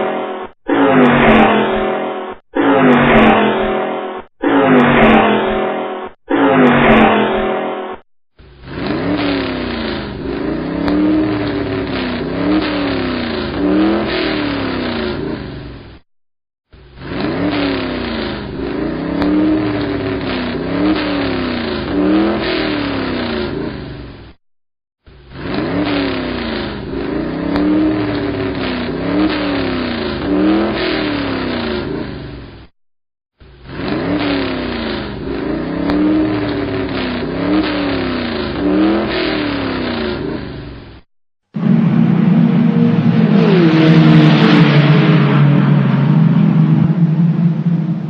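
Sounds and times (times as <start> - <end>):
racing car engine revving: 0.7 - 1.8, 4.4 - 5.6, 6.3 - 7.4, 8.4 - 16.0, 16.7 - 24.1, 25.1 - 32.4, 33.4 - 40.7, 41.6 - 48.0.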